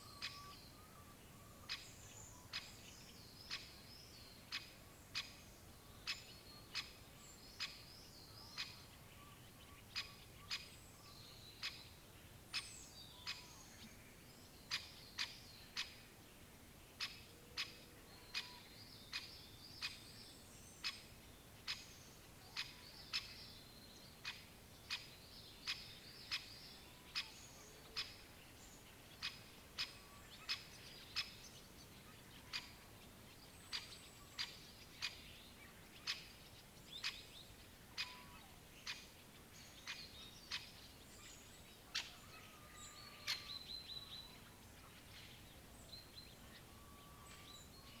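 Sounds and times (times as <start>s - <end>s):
woodpecker calls: 0.0s - 1.9s, 8.6s - 10.7s, 17.0s - 20.0s, 24.2s - 28.3s, 29.2s - 33.0s, 33.6s - 35.3s, 37.9s - 39.1s
background hiss: 0.0s - 48.0s.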